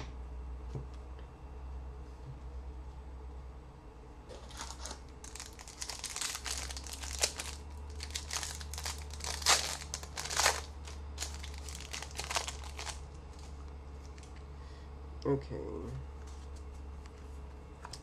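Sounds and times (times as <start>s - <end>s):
wrapper crinkling and tearing: 4.3s - 14.4s.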